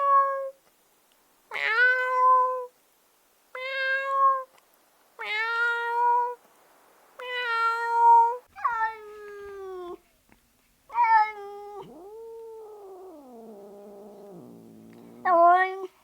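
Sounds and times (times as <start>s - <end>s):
cat meowing: 7.2s - 10.0s, 10.9s - 16.0s.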